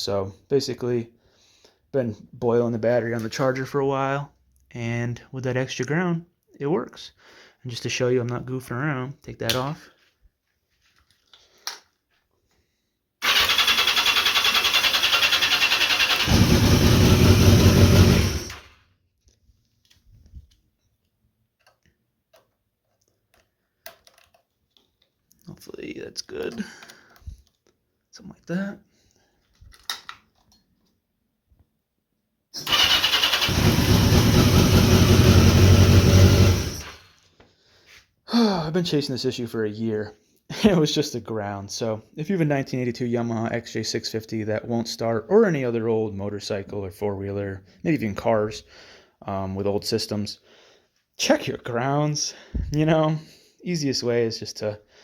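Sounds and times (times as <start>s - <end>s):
electric starter cranking engine: 13.2s - 18.8s, 32.6s - 37.2s.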